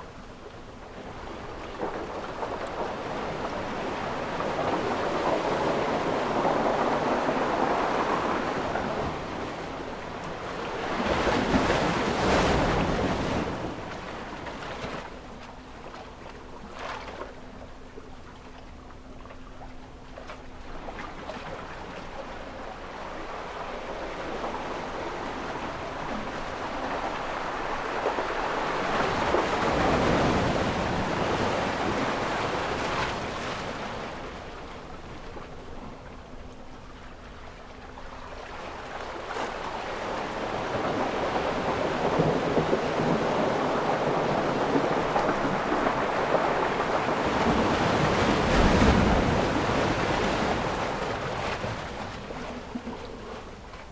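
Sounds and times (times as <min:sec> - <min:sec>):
ocean waves washing in: 0:38.4 - 0:53.9.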